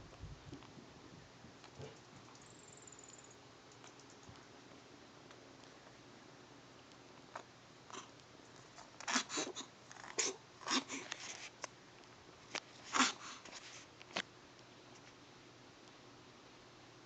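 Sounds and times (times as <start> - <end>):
kitten sneezing: 9.1 - 11.1, 12.9 - 13.4.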